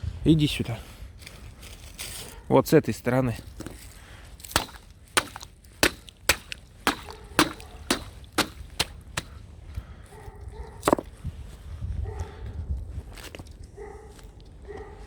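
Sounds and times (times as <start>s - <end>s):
fox lapping water: 4.5s - 9.3s.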